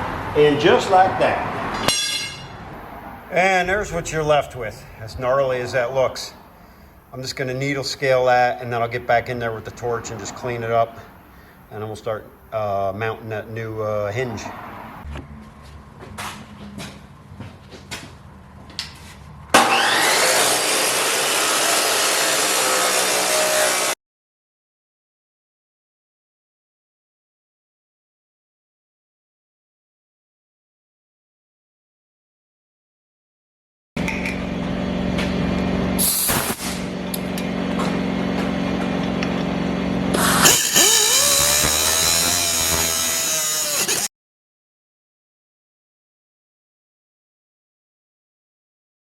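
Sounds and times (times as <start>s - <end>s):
power tool buzzing: 19.6s - 24.0s, 34.5s - 44.1s
tool motor spinning with high hiss: 19.6s - 24.0s, 40.1s - 44.1s
needle scaler buzzing on steel: 40.1s - 44.1s.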